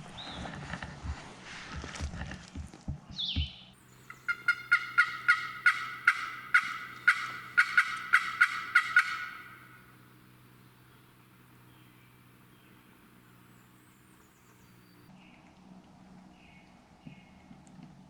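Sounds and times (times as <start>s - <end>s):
wild turkey yelping: 3.8s - 10.4s.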